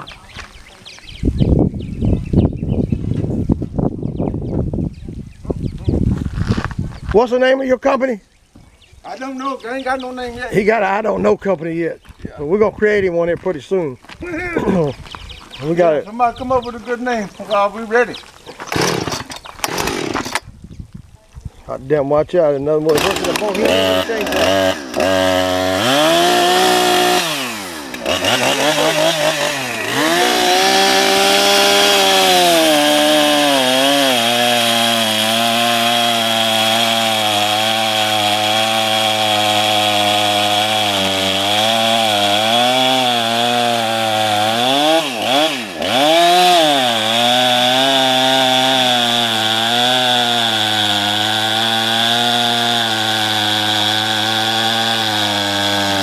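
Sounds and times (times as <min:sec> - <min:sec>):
chainsaw cutting log: 0:18.5 - 0:20.5, 0:22.9 - 0:56.0.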